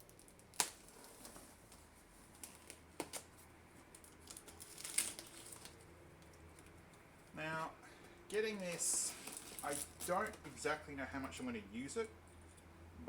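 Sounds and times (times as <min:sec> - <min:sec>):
packaging crackle: 0:00.0 - 0:06.8, 0:08.4 - 0:10.6.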